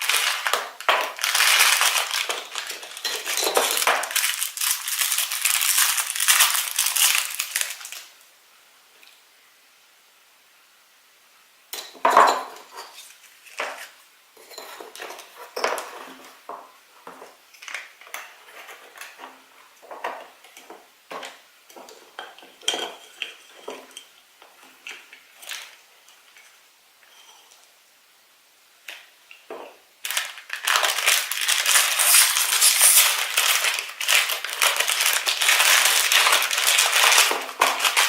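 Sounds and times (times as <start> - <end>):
packaging crinkling: 0.0 - 8.1, 30.0 - 38.0
plastic toys clicking and tapping: 30.1 - 38.0.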